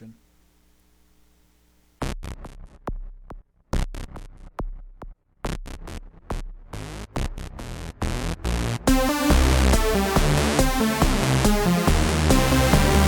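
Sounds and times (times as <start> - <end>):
electronic music with stuttering beats: 5.6 - 13.0.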